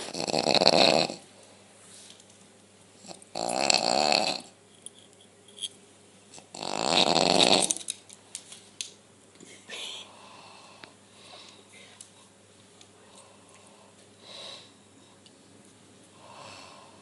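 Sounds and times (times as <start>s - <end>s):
person snoring: 0.0s - 1.2s, 3.1s - 4.5s, 6.5s - 7.8s, 16.2s - 17.0s.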